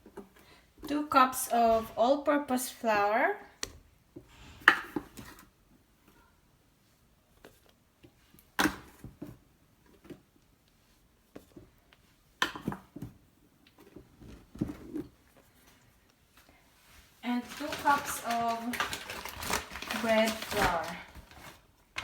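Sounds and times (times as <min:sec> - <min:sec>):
utensils clattering against a bowl: 0:17.4 - 0:21.0.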